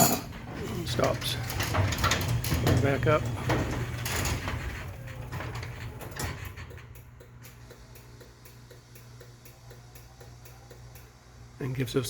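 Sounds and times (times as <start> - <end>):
garage door clattering: 0.0 - 7.0.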